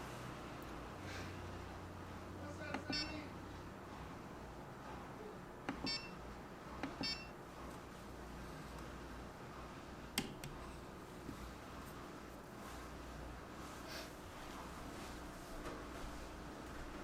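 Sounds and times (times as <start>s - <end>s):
low steady hum: 0.0s - 17.0s
short buzzer beeps: 2.8s - 3.3s, 5.7s - 6.2s, 6.9s - 7.4s.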